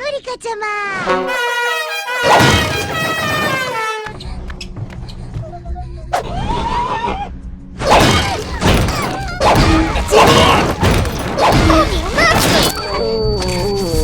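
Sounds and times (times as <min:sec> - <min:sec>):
music: 0:01.0 - 0:14.0
cartoon crashes and thuds: 0:01.1 - 0:04.1, 0:07.8 - 0:12.9.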